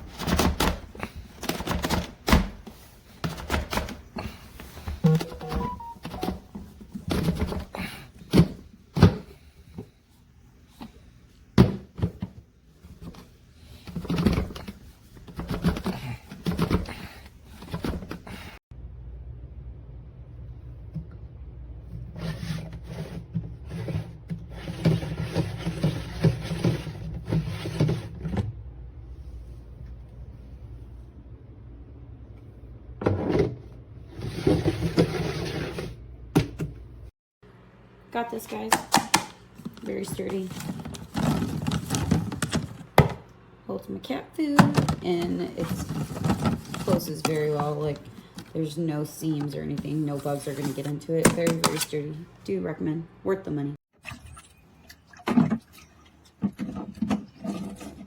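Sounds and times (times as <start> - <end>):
plastic container rubbing and knocking: 39.6 - 43.1, 44.7 - 48.6.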